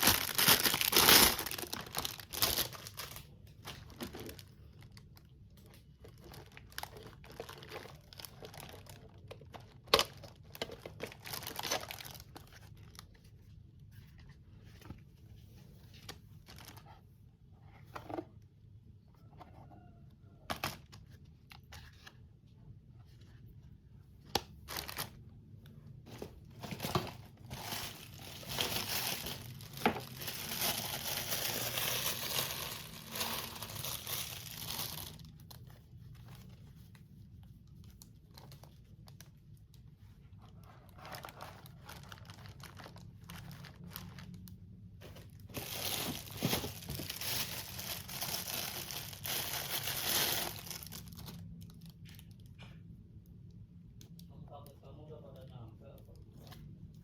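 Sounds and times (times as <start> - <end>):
plastic packaging crinkling and tearing: 0.0 - 13.2, 16.4 - 16.9, 24.4 - 25.4, 26.1 - 36.6, 37.8 - 52.6.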